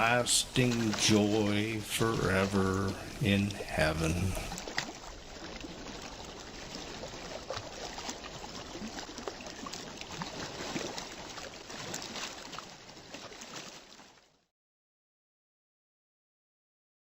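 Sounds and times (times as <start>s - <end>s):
ocean waves washing onto beach: 0.0s - 14.1s.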